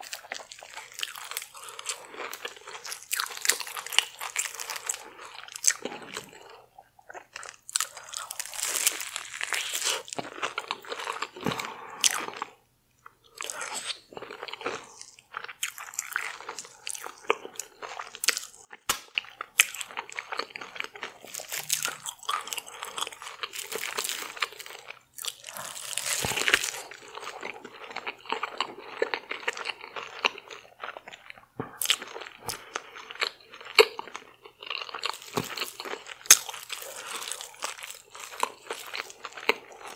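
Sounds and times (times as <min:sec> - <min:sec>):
crunchy food chewing: 0:00.0 - 0:39.9.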